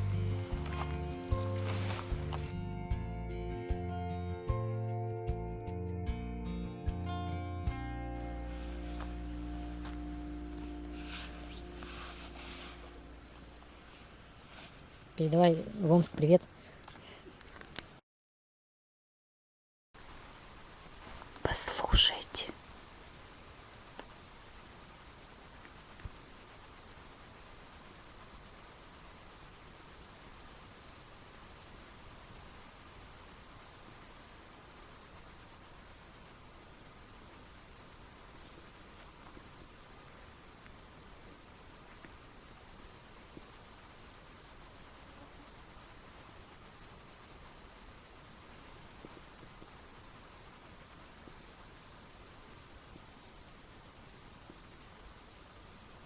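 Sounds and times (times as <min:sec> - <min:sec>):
crickets chirring: 0:00.0 - 0:02.5, 0:08.2 - 0:14.4, 0:20.0 - 0:56.0.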